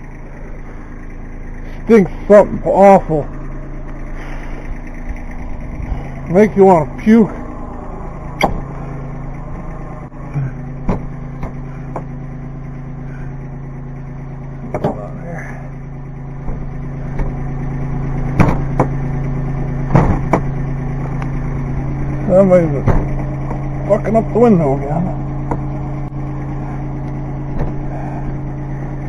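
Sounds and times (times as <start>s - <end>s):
tractor diesel engine running: 0.0s - 29.0s
front loader knocks and clunks: 4.7s - 12.3s, 14.5s - 15.2s, 16.3s - 24.5s, 25.2s - 29.0s.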